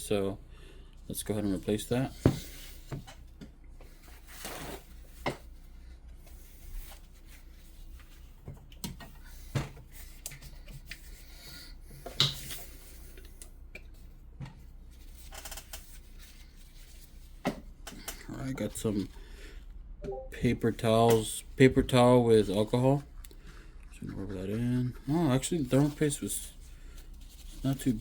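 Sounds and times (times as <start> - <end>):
soft rustling: 13.9 - 17.4, 21.9 - 28.0.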